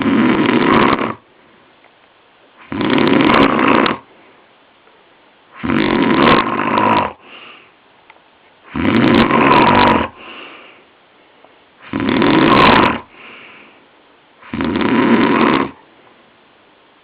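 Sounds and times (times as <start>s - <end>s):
man snoring heavily: 0.0s - 1.2s, 2.6s - 4.1s, 5.6s - 7.6s, 8.7s - 10.6s, 11.8s - 13.5s, 14.4s - 15.8s.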